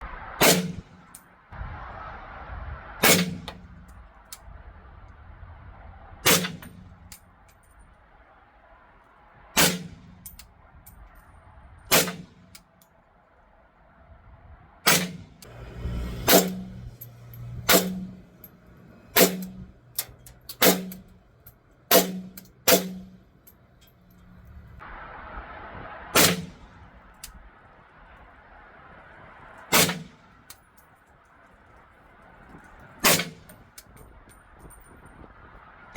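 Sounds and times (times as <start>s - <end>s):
suppressed rifle shots: 0.4s - 0.9s, 6.2s - 6.8s, 9.6s - 10.1s.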